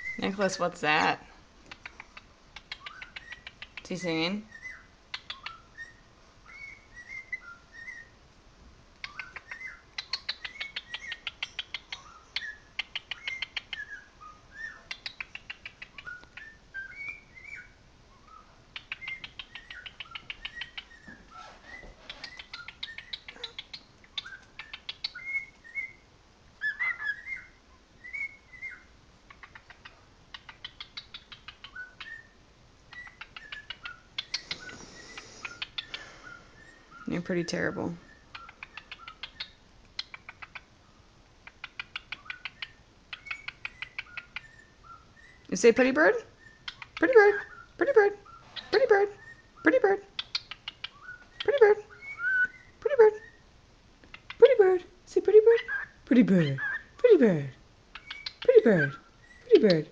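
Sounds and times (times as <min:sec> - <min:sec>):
cockatiel whistling and chirping: 0:02.6 - 0:03.8, 0:04.5 - 0:08.2, 0:09.0 - 0:26.0, 0:26.6 - 0:37.1, 0:38.0 - 0:40.7, 0:41.4 - 0:45.5, 0:46.3 - 0:49.6, 0:50.2 - 0:53.5, 0:55.6 - 0:57.0, 0:57.9 - 0:59.9.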